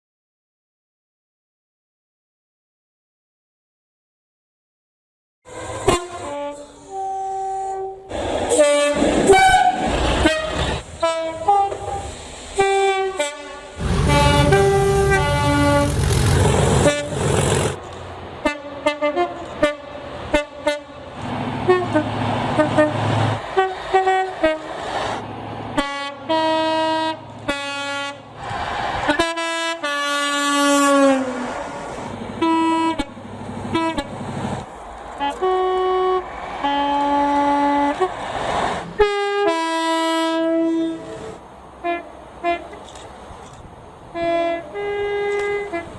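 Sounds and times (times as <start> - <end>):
diesel locomotive horn blasts: 5.5 - 17.7, 18.4 - 24.8, 25.8 - 28.4, 29.1 - 34.3, 35.2 - 38.2, 39.0 - 42.8, 44.1 - 45.9
train noise: 5.5 - 45.9.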